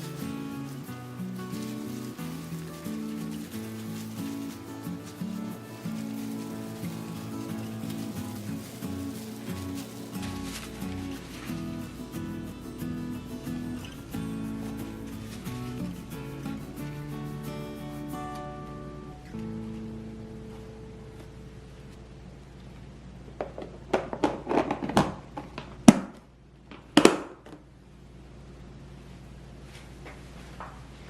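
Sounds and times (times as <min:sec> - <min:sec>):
light steady beat: 0:00.0 - 0:21.6
sustained chords: 0:00.0 - 0:22.1.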